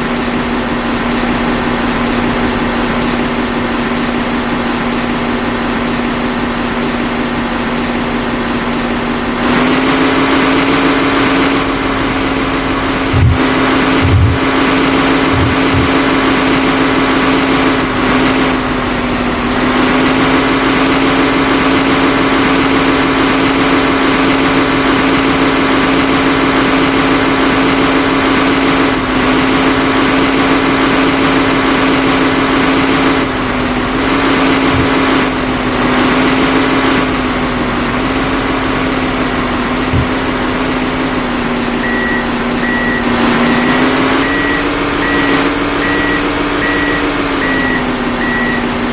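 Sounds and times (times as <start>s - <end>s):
reversing alarm beeping: 0.0s - 24.0s, 41.7s - 48.9s
heavy diesel engine running: 0.0s - 48.9s.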